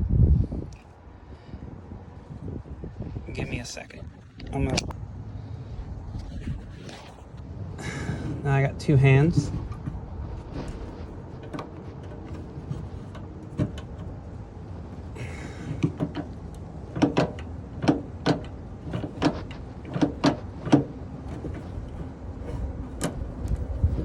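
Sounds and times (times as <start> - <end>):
tailgate handle clicks and knocks: 11.4 - 14.3, 15.7 - 23.7.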